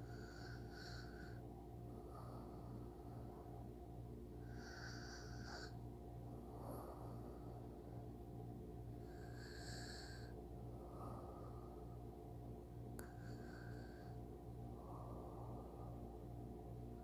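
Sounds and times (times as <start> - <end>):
person snoring softly: 0.0 - 3.6, 4.4 - 8.0, 8.9 - 12.0, 13.0 - 16.2
low steady hum: 0.0 - 17.0.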